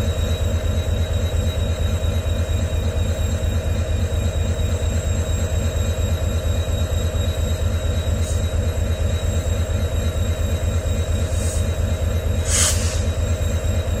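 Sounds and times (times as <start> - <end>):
diesel locomotive idling: 0.0 - 14.0
air hisses: 12.4 - 13.2.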